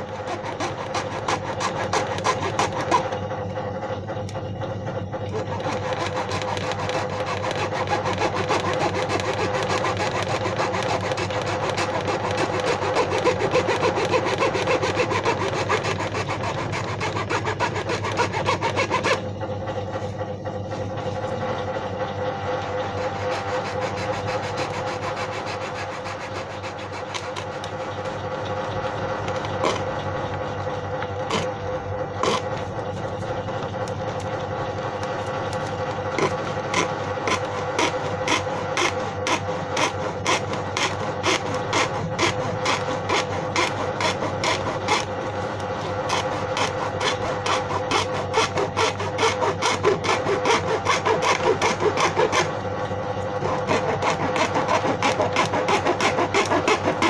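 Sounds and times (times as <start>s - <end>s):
hand tool rasping plastic bucket: 0.0s - 3.2s, 5.3s - 19.3s, 23.0s - 28.2s, 29.3s - 29.9s, 31.3s - 31.5s, 32.2s - 32.6s, 36.2s - 45.2s, 45.8s - 52.5s, 53.4s - 57.0s
low hum: 2.2s - 57.0s.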